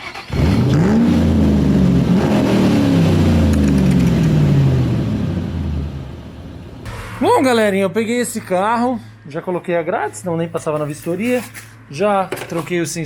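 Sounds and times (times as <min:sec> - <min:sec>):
car engine revving: 0:00.0 - 0:07.0.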